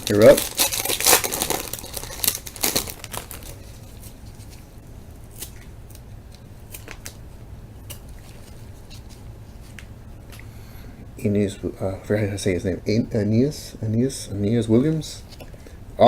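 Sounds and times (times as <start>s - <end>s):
foil pack snipping and crinkling: 0.0s - 4.6s.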